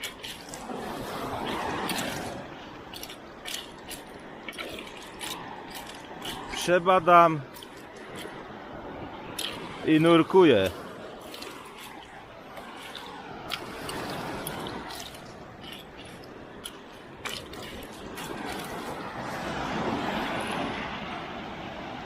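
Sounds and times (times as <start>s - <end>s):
water sloshing and splashing: 0.0s - 22.0s
sharp drip-like clicks: 2.9s - 8.4s, 9.3s - 9.8s, 10.6s - 19.0s.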